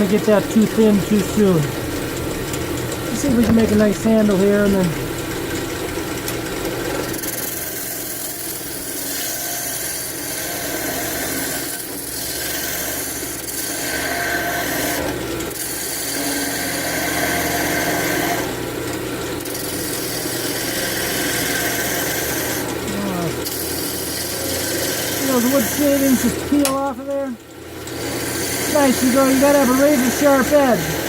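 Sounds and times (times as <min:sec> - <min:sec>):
lathe motor hum: 0:00.0 - 0:31.0
lathe tool scraping wood: 0:00.0 - 0:31.0.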